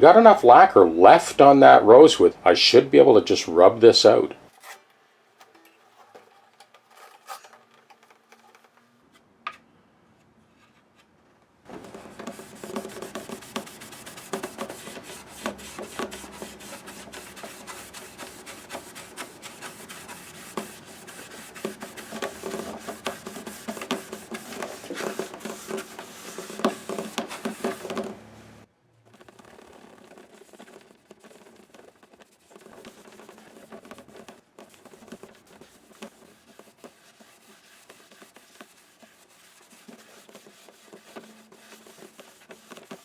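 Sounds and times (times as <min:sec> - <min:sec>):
scratchy rubbing on wood: 0:11.7 - 0:28.1, 0:29.1 - 0:43.0.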